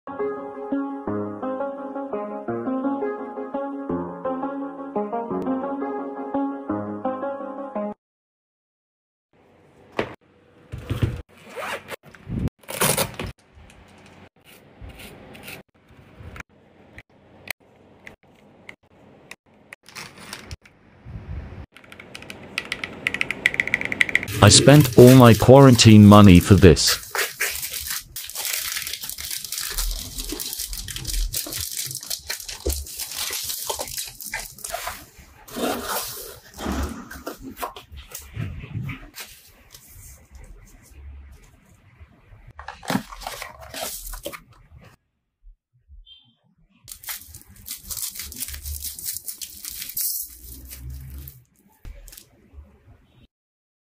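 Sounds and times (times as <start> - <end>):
packaging ripping and scraping: 19.8 - 20.6, 26.5 - 36.5, 42.6 - 44.4, 46.9 - 52.2.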